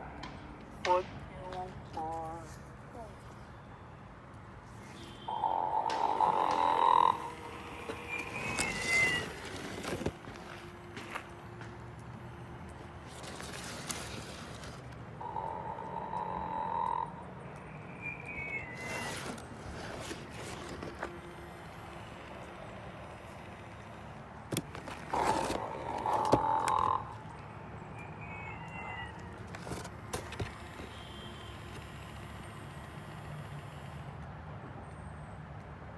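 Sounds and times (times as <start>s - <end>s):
toy playing recorded snoring: 5.3s - 9.5s, 15.2s - 17.2s, 20.4s - 24.3s, 25.0s - 27.1s.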